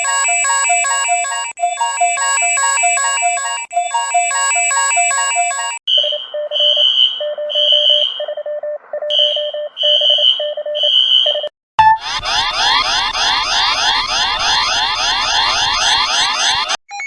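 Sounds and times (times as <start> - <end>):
pulsing beep alarm: 0.0 - 17.0
melodic alert tone pattern: 11.8 - 16.7
rapid rising electronic sweeps: 11.8 - 16.8.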